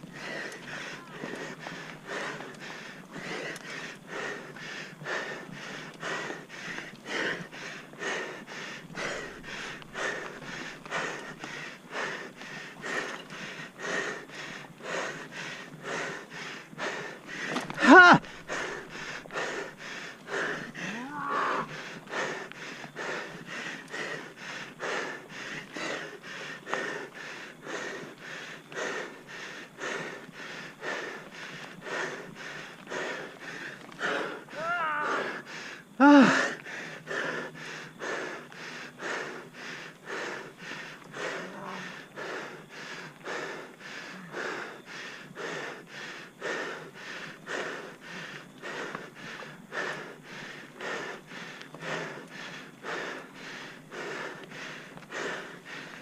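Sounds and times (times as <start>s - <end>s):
heavy breathing: 0.0s - 56.0s
person exclaiming ah: 17.8s - 18.2s, 20.9s - 21.6s, 34.6s - 35.3s.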